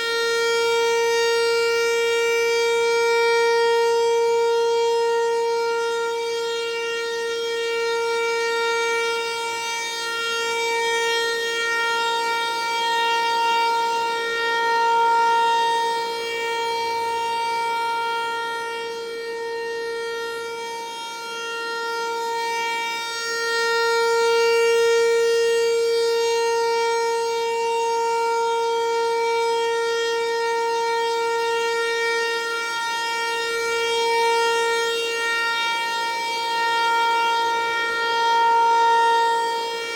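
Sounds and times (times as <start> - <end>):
outdoor warning siren steady tone: 0.0 - 39.9.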